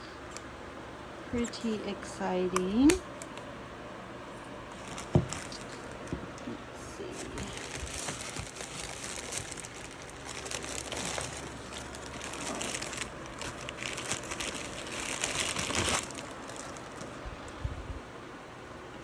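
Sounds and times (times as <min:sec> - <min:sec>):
packaging crinkling and rustling: 0:04.3 - 0:06.4, 0:07.1 - 0:17.6.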